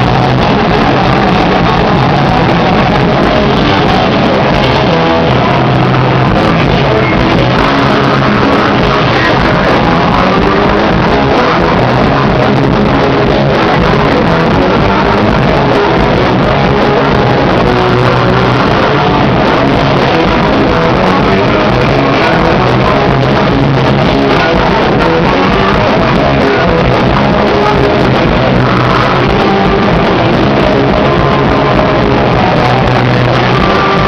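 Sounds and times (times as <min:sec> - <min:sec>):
rock band playing punk rock: 0:00.0 - 0:34.0.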